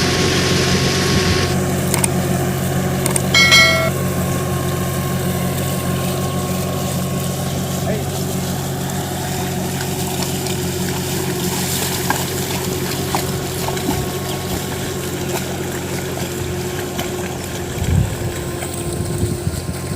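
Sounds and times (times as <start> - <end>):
water splashing: 7.0 - 19.9.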